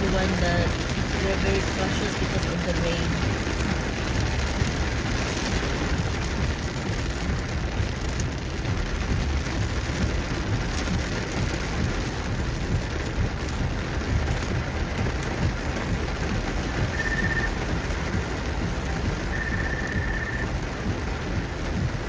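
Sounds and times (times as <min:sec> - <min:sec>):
heavy rain on a car: 0:00.0 - 0:22.0
low road rumble: 0:00.0 - 0:22.0.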